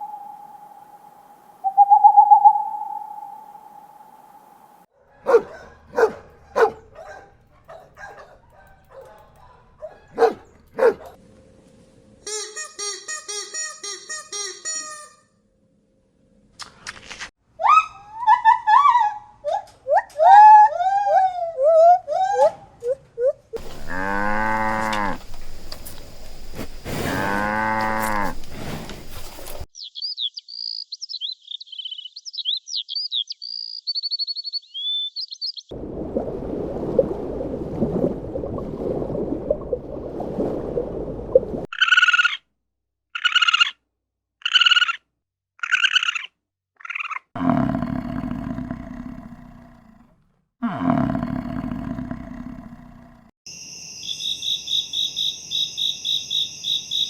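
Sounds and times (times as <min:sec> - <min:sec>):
cow mooing: 0:23.6 - 0:25.3, 0:27.1 - 0:28.5, 0:47.4 - 0:53.3
deep falling calls: 0:23.6 - 0:26.4
bird chirps and song: 0:29.7 - 0:35.7, 0:53.9 - 0:57.0.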